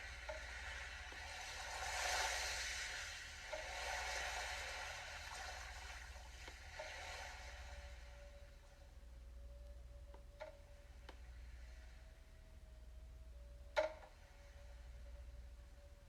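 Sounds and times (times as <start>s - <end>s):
soft rushing wash of sound: 0.0s - 8.9s
low steady hum: 0.0s - 16.0s.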